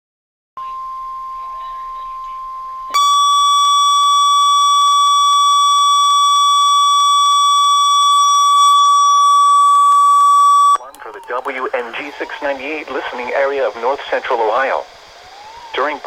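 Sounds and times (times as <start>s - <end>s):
loud high alarm tone: 0.6s - 10.8s.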